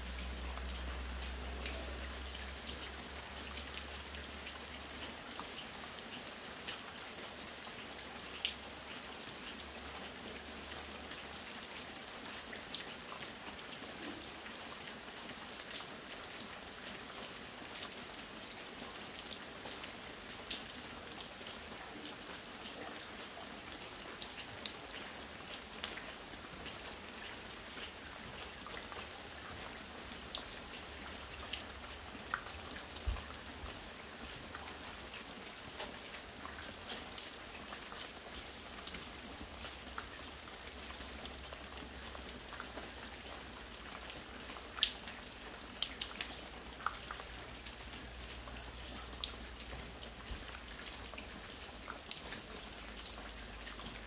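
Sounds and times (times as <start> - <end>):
fine rain falling: 0.0 - 54.0
drips from roof edge: 22.9 - 54.0.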